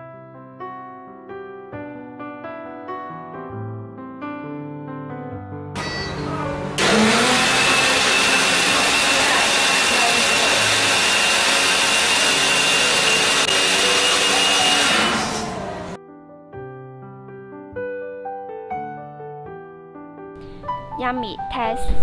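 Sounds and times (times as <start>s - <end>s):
juicer motor whirring: 5.8s - 16.0s.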